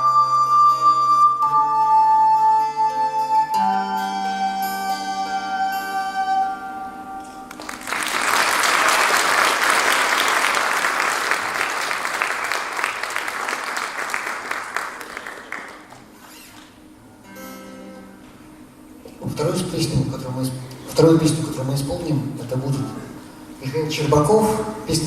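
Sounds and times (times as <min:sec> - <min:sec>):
flute and acoustic guitar: 0:00.0 - 0:07.5
audience applauding: 0:07.5 - 0:16.7.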